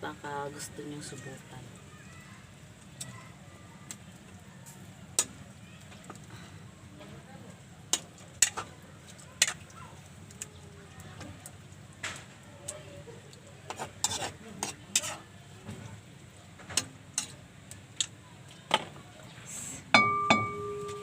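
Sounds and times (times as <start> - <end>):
utensil stirring food in a pan: 0.6 - 21.0
utensil clinking against pan: 20.0 - 21.0.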